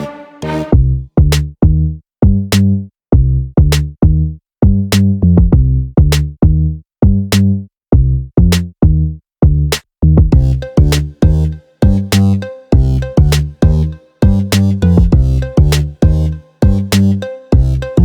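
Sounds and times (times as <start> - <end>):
electronic music with drum machine: 10.4 - 18.0.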